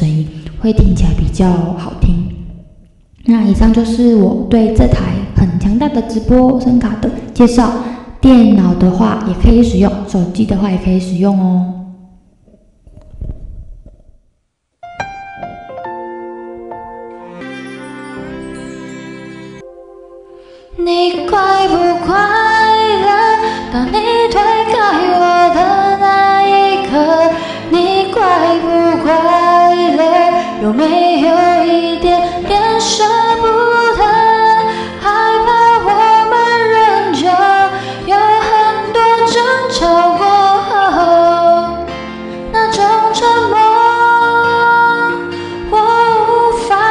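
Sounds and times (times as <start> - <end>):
woman singing a song: 20.7 - 46.9.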